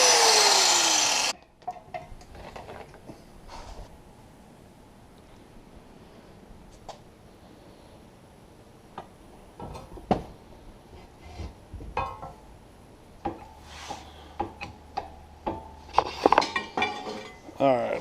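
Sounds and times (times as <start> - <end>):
metal scrape: 13.5 - 14.1.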